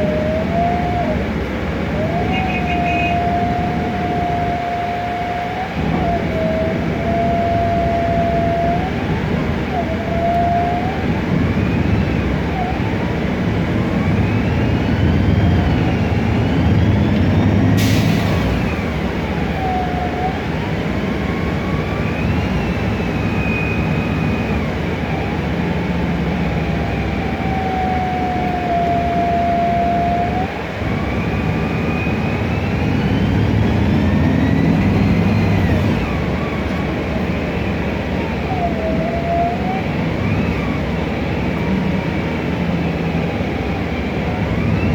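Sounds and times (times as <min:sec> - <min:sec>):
bus engine rumble: 0:00.0 - 0:44.9
road and air noise: 0:00.0 - 0:44.9
gearbox whine: 0:05.2 - 0:24.8.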